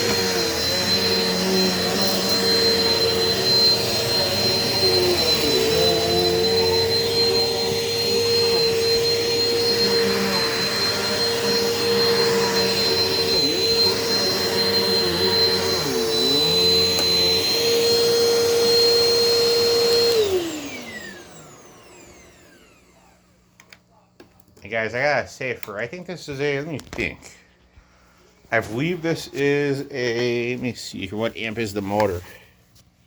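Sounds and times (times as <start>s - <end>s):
vacuum motor spinning down: 0.0s - 23.2s
vacuum cleaner motor whine: 0.0s - 23.8s.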